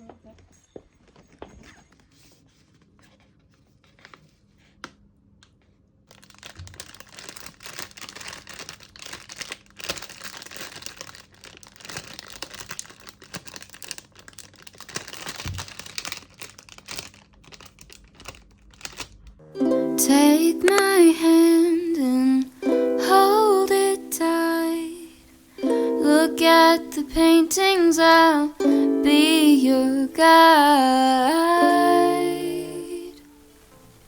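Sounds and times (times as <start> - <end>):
packaging crinkling and tearing: 6.1 - 19.4.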